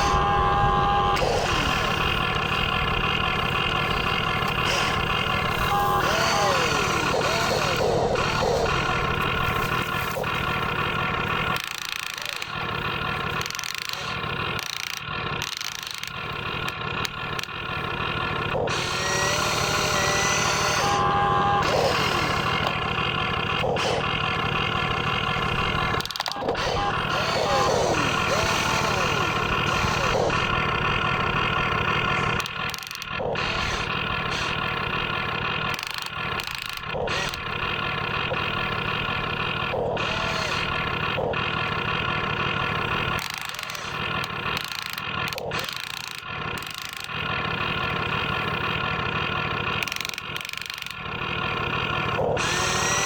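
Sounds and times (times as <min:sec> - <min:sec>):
rising and falling whines: 0:00.0 - 0:11.4, 0:18.7 - 0:23.0, 0:25.4 - 0:32.5
high motor whine: 0:00.0 - 0:53.0
model machine engine drone: 0:00.0 - 0:53.0
sharp clicks: 0:01.1 - 0:17.6, 0:25.6 - 0:30.6, 0:31.4 - 0:47.2, 0:49.7 - 0:51.2.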